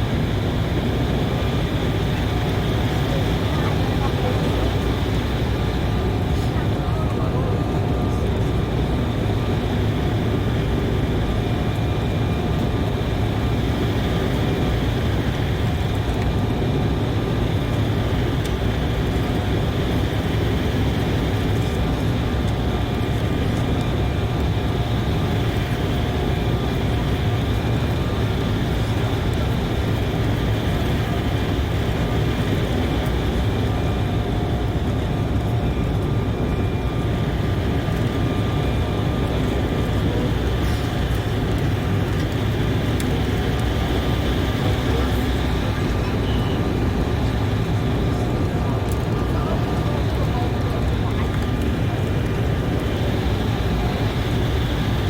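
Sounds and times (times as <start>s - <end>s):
jet engines humming: 0.0s - 55.0s.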